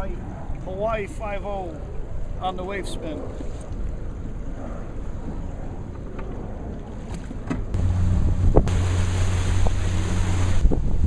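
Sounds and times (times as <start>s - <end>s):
wind buffeting microphone: 0.0s - 11.0s
low motor hum: 3.6s - 11.0s.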